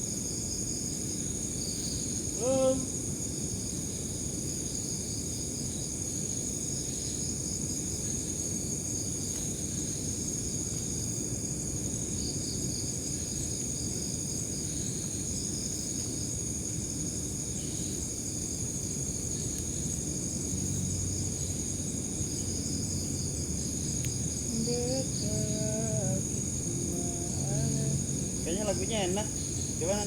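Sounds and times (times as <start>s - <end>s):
insects buzzing and chirping: 0.0s - 30.0s
low background rumble: 18.6s - 30.0s.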